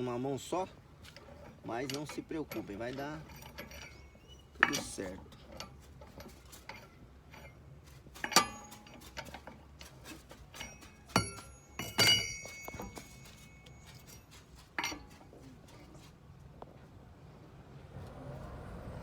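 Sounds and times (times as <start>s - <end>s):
wrench and bolts clinking: 1.1s - 15.8s
ringing steel strikes: 10.6s - 15.0s.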